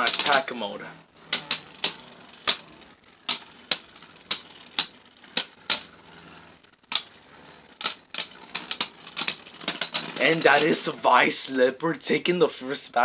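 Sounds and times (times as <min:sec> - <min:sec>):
spinning tops clashing: 0:00.0 - 0:00.4, 0:01.4 - 0:02.7, 0:03.3 - 0:05.9, 0:07.8 - 0:10.8.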